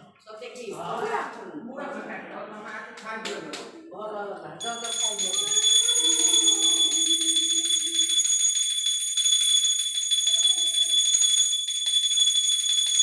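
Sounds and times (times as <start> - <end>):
hand bell ringing rapidly: 4.6 - 13.0.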